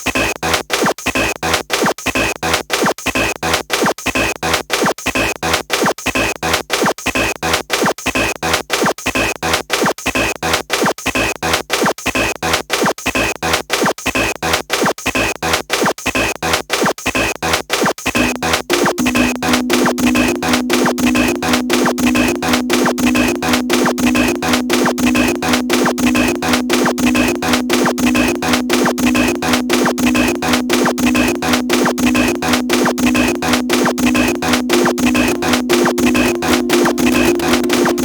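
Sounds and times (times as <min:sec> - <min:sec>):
choppy synthesizer noise bursts: 0:18.2 - 0:38.0
low synth tone: 0:18.2 - 0:38.0.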